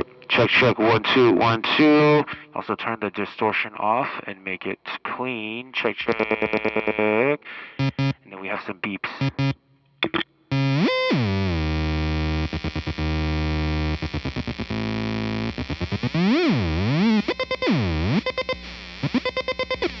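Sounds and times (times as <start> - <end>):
distorted swooping instrument tone: 7.8 - 8.2, 9.2 - 9.6, 10.5 - 20.0.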